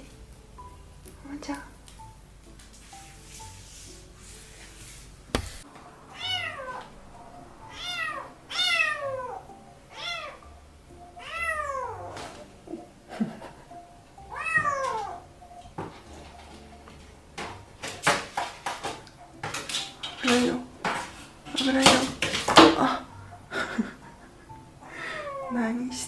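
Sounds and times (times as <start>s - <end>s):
sharp tap: 5.3s - 5.7s.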